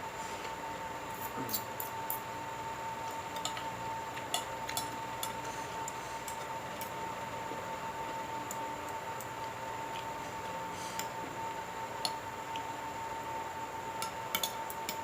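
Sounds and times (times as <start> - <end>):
steady high-pitched hum: 0.0 - 15.0
person eating clicks and smacks: 3.1 - 7.0.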